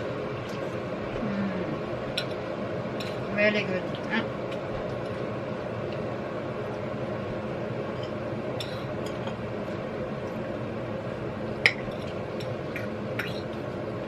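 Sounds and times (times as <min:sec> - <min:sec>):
cutlery clinking against plates: 0:08.0 - 0:09.4, 0:11.7 - 0:13.6.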